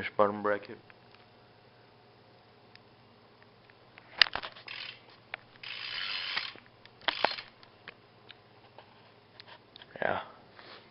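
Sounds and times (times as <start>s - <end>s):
bike hub freewheeling buzz: 4.5s - 7.6s.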